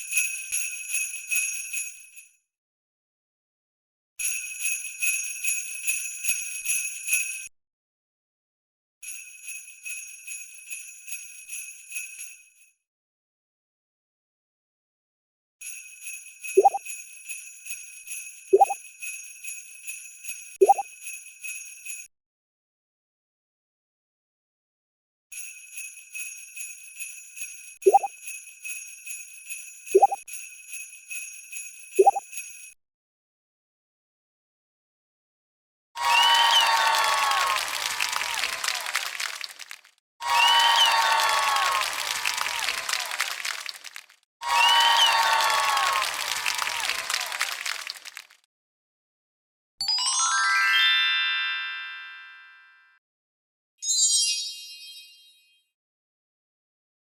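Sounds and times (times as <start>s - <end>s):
jingle bells shaken: 0.0s - 2.3s, 4.3s - 7.5s, 9.0s - 12.5s, 15.6s - 22.1s, 25.4s - 32.8s
rising chirp sound effect: 27.9s - 28.1s, 53.8s - 55.5s.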